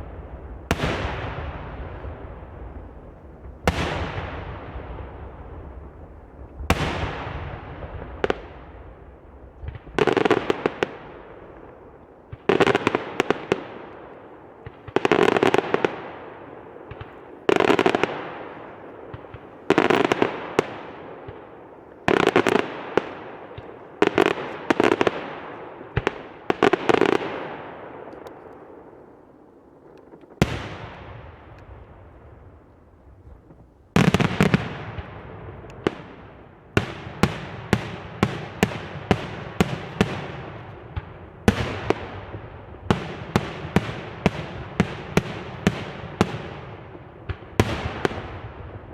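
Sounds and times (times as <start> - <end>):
fireworks bangs and crackles: 0.0 - 48.9.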